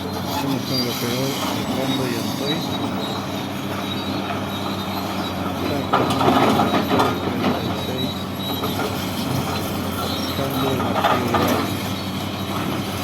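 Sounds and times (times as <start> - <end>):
metallic squealing and clanking: 0.0 - 12.2
excavator engine running: 0.0 - 13.0.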